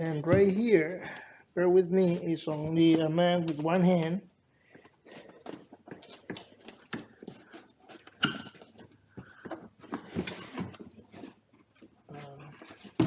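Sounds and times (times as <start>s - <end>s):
boxes knocking: 0.0s - 0.8s.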